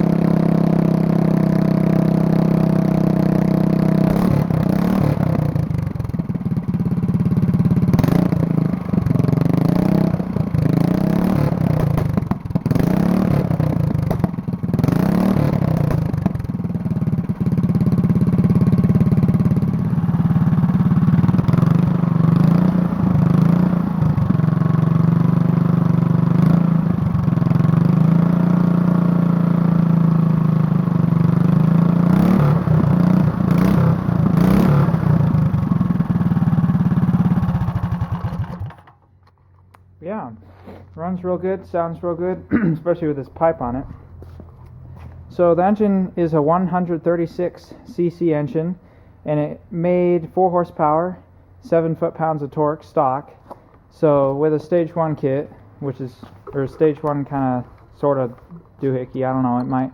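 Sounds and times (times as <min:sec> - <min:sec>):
go-kart engine revving: 0:00.0 - 0:39.0.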